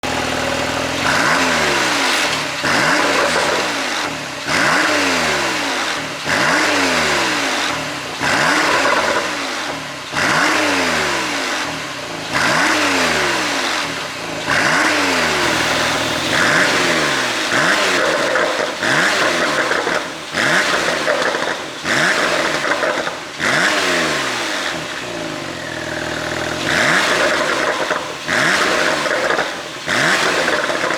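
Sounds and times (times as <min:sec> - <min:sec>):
car engine revving: 0:00.0 - 0:30.9
exhaust pops and crackles: 0:15.3 - 0:23.6, 0:25.6 - 0:30.9.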